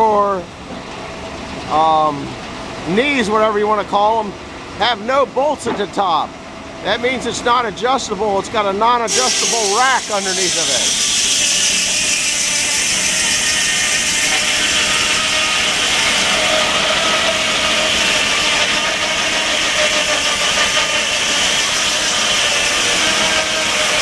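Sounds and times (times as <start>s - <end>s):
circular saw rushing noise: 9.1s - 24.0s.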